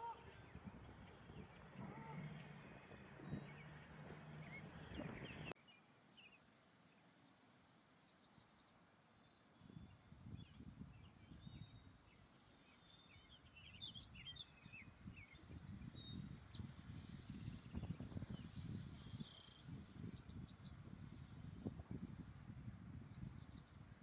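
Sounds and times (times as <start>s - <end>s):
wind gusting against microphone: 0.0s - 5.5s, 14.8s - 24.0s
faint bird chirps: 0.0s - 5.6s, 19.0s - 19.6s.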